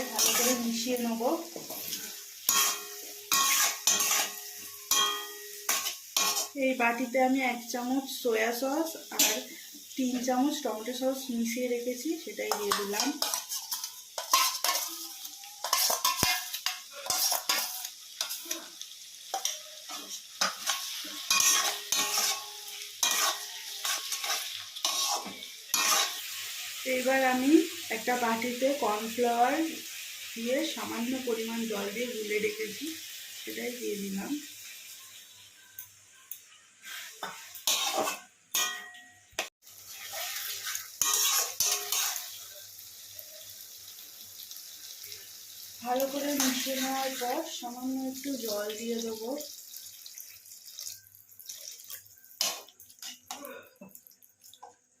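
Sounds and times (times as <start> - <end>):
spatula scraping pan: 0.0 - 0.8, 1.6 - 6.6, 12.5 - 18.7, 19.3 - 26.4, 36.8 - 38.8, 39.4 - 42.4
vegetables sizzling in pan: 0.0 - 53.4.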